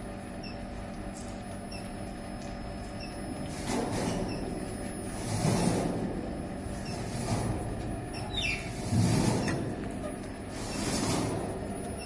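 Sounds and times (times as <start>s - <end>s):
furnace electrical hum: 0.0s - 12.0s
small high squeaks: 8.1s - 9.6s.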